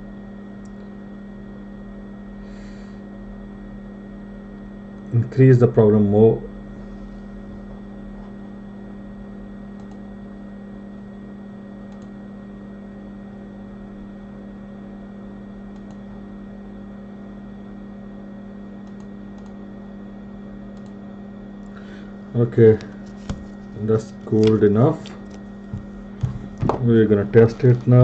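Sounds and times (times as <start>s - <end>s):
equipment humming with hiss: 0.0s - 28.0s
faint light clicks: 18.8s - 19.6s.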